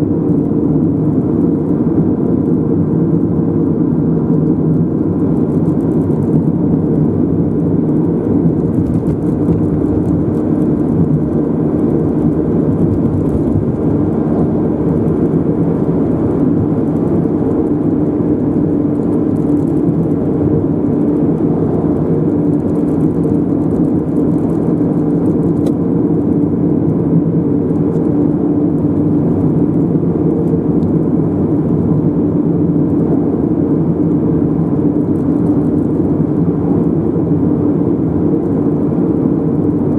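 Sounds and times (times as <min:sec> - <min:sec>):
car driving: 0:00.0 - 0:39.9.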